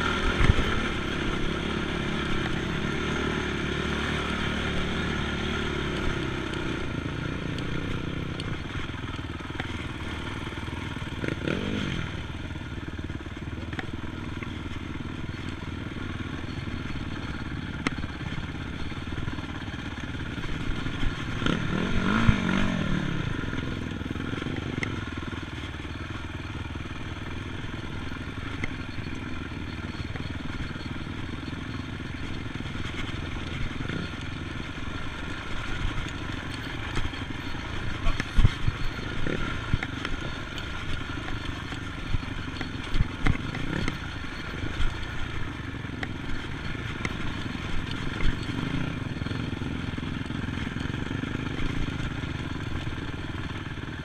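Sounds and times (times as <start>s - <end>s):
atv engine running: 0.0s - 54.0s.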